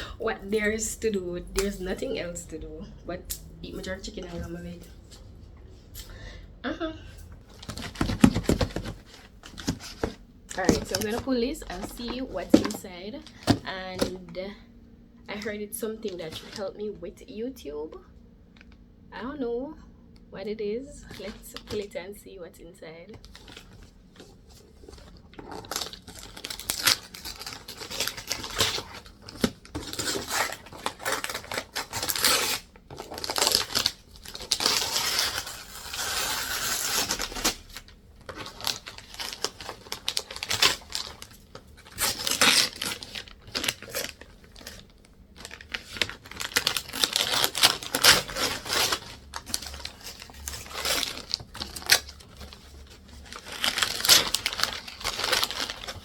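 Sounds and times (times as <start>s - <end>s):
gift wrapping tearing and crinkling: 7.4s - 14.2s, 23.2s - 56.0s.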